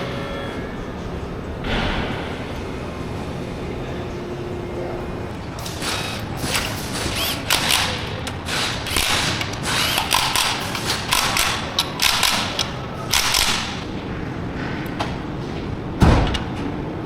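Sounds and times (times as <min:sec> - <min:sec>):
metal tools clanking and rattling: 0:05.6 - 0:13.9.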